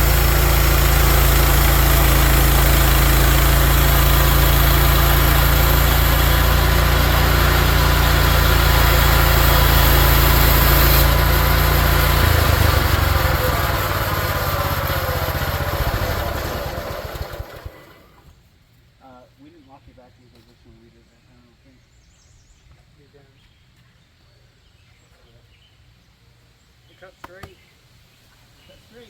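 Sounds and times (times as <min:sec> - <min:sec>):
sawmill gas engine running: 0:00.0 - 0:18.3.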